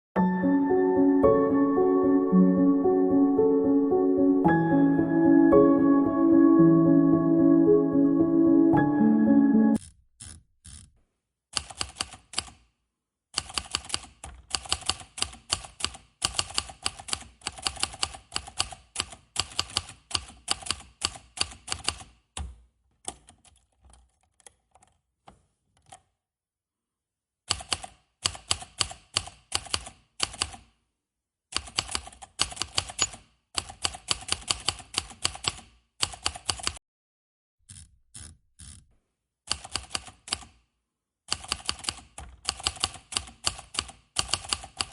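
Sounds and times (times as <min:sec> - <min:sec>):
typewriter keys clacking: 0:13.4 - 0:22.1, 0:31.6 - 0:36.8, 0:41.3 - 0:44.9.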